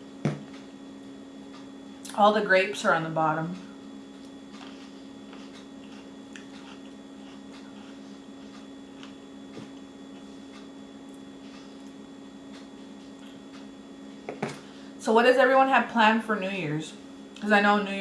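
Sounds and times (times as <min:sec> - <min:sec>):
person chewing fruit: 0:03.8 - 0:13.7.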